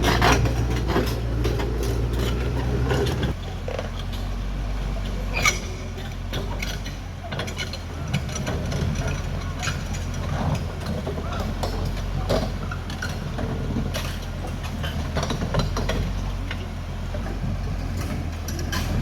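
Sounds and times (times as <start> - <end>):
bulldozer diesel engine running: 0.0 - 19.0
steel tracks clanking and squeaking: 0.0 - 19.0.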